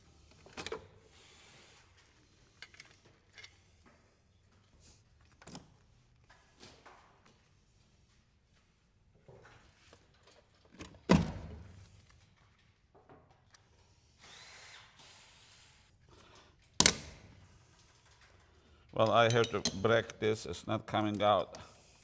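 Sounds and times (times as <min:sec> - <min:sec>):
scraping of hardware: 0:19.0 - 0:20.1.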